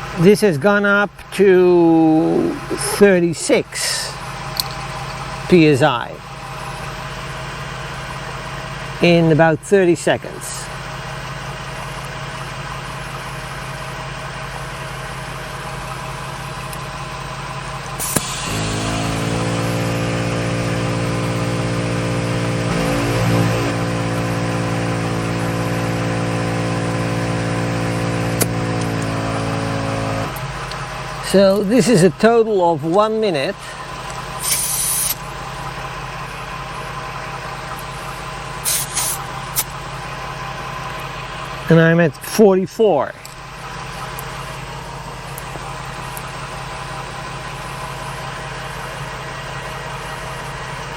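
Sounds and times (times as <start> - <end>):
van engine idling: 0.0 - 50.9
air compressor running: 1.9 - 9.2, 10.6 - 32.7, 33.3 - 42.0, 43.2 - 50.9
short air hisses: 18.0 - 19.8, 34.4 - 35.2, 38.6 - 39.7.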